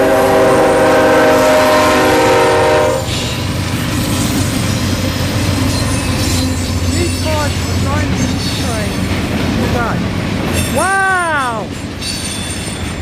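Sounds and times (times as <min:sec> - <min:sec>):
locomotive air horn chord: 0:00.0 - 0:03.2
freight train rumbling past: 0:00.0 - 0:13.0.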